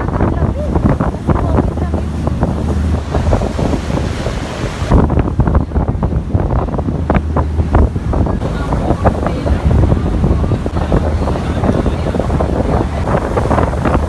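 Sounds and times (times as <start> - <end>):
boat engine low hum: 0.0 - 14.0
waves rushing against hull: 0.0 - 14.0
wind buffeting microphone: 0.0 - 14.0.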